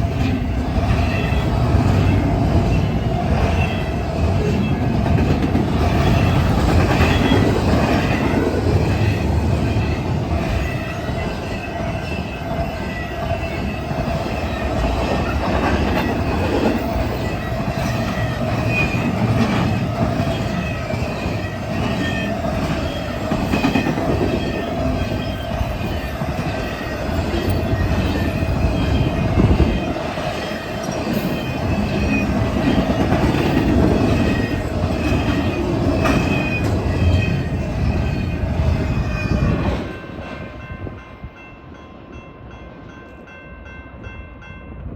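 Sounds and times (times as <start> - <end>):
train wheels clattering on rails: 0.0 - 41.2
wheel squeal: 5.8 - 8.4, 16.0 - 19.6, 20.2 - 39.8.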